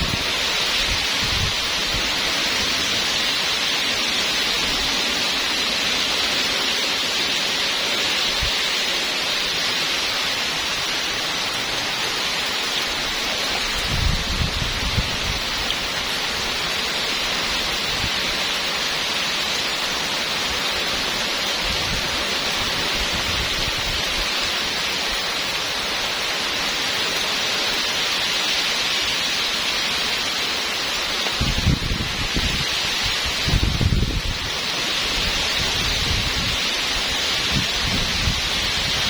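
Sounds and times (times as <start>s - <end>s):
wind gusting on microphone: 0.0s - 26.5s, 31.0s - 39.0s
heavy rain pouring: 0.0s - 39.0s.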